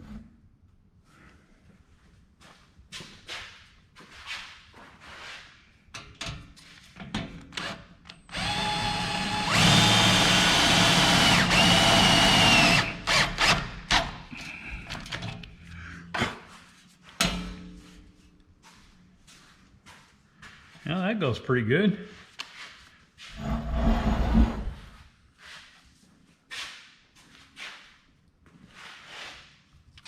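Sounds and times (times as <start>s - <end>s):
power drill driving screw: 7.6s - 14.2s.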